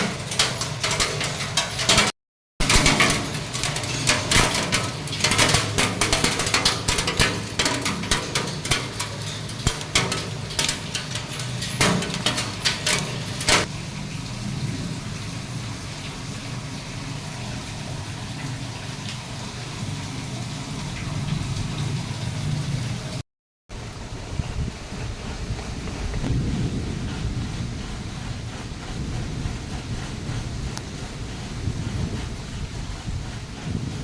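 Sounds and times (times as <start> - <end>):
hailstones striking a hard surface: 0.0 - 13.7
steady rain hiss: 2.7 - 33.7.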